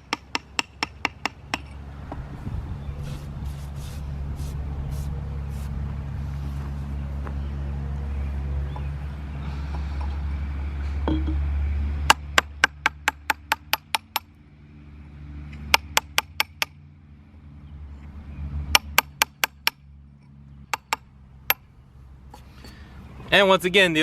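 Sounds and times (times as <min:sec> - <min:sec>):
hammer on chisel clinking: 0:11.1 - 0:11.4.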